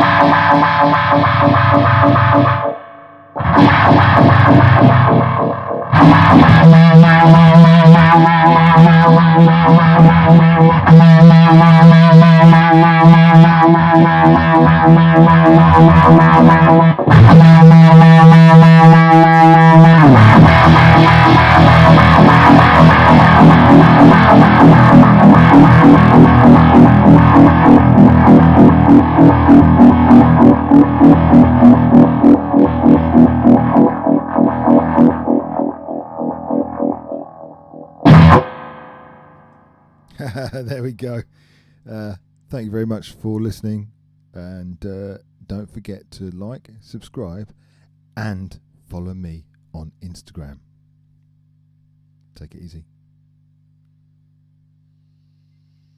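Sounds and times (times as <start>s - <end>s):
fuzzed stringed instrument: 0.0s - 39.6s.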